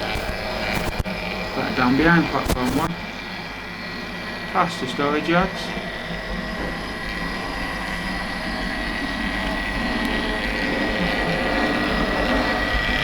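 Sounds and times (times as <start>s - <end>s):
model train motor whine: 0.0s - 13.0s.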